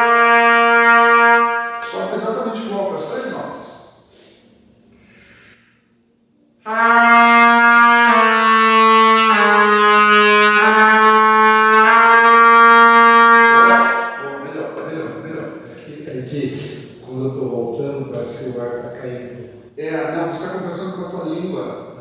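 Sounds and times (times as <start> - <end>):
trumpet playing held notes: 0.0 - 2.3, 6.6 - 14.8.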